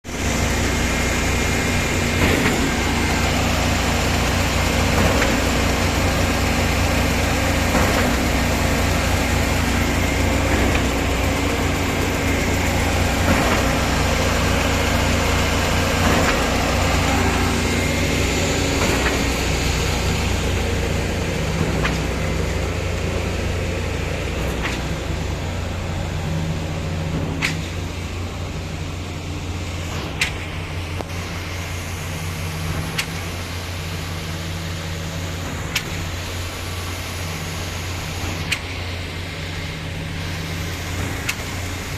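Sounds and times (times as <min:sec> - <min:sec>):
engine humming: 0:00.0 - 0:41.9.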